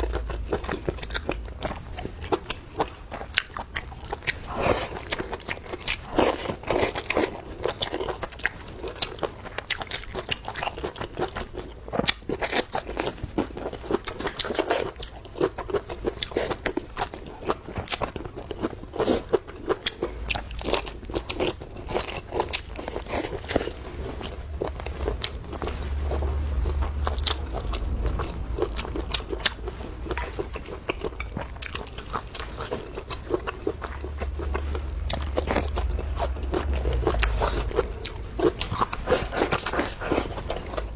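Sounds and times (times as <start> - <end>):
low rumble: 0.0 - 4.4, 19.9 - 40.9
biting and chewing food: 0.0 - 40.9.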